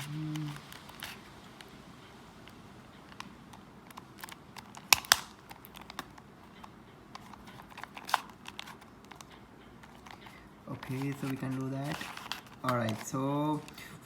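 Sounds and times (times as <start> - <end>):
plastic puzzle cube clicking: 3.0 - 13.8.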